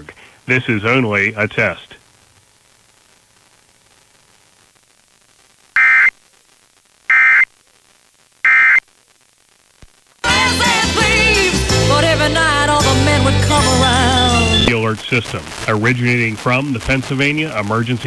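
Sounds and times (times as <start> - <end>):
harsh digital data tones: 5.8 - 6.1, 7.1 - 7.5, 8.5 - 8.8
music: 10.2 - 14.7.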